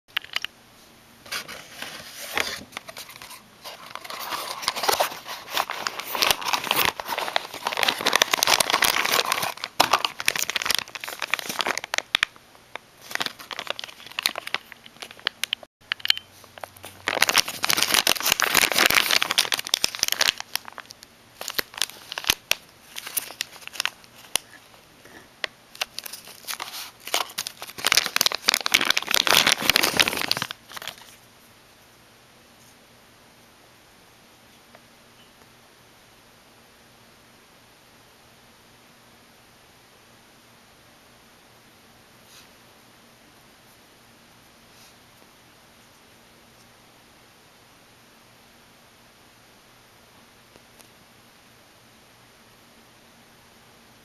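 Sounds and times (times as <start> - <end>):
packaging crinkling and rustling: 1.3 - 31.2.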